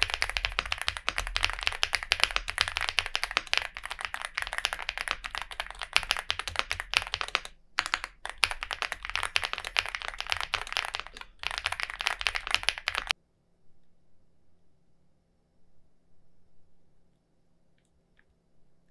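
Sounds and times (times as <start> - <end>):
mechanical keyboard typing: 0.0 - 13.2.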